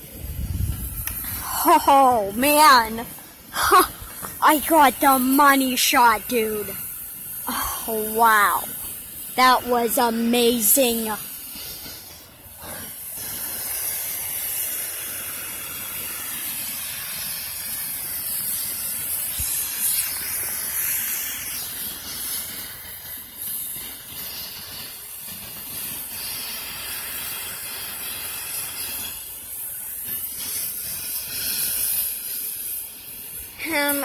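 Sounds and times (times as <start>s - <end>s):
helicopter turbine engines whining: 0.0s - 14.4s, 33.4s - 34.0s.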